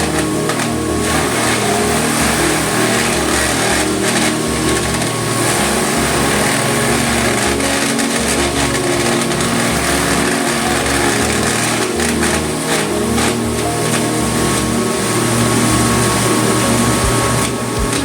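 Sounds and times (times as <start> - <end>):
wood shredder chipping wood: 0.0 - 18.0.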